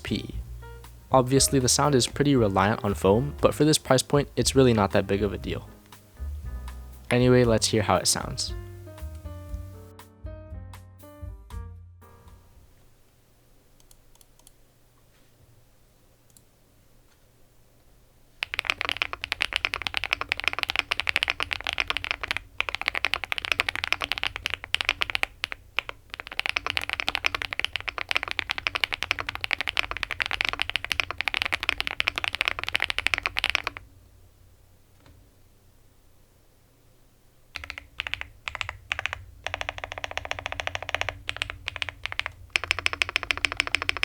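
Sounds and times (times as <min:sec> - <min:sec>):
fast typing on mechanical keyboard: 0:18.4 - 0:33.8, 0:37.6 - 0:44.0.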